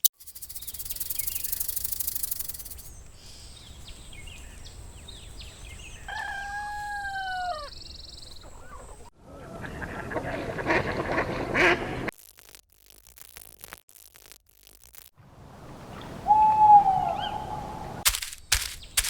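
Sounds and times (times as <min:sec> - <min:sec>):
faint bird chirps: 0:00.0 - 0:06.5
insects trilling: 0:00.1 - 0:05.1, 0:12.1 - 0:15.1
rooster crowing: 0:06.1 - 0:07.8.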